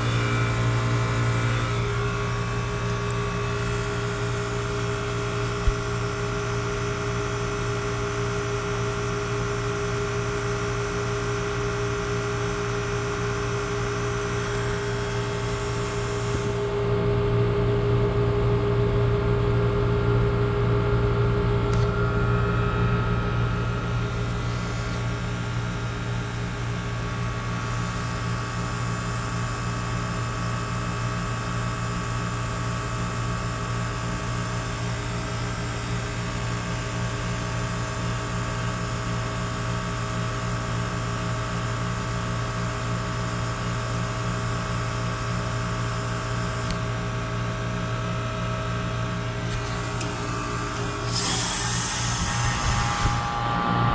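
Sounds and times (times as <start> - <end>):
heat pump compressor hum: 0.0 - 30.9, 43.2 - 53.9.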